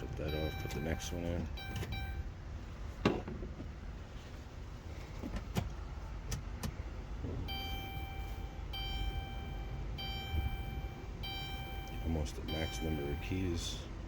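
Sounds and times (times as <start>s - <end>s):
dashboard electronic chime: 0.0s - 2.3s, 7.5s - 13.6s
ignition key clicks: 0.0s - 2.3s, 5.4s - 6.8s.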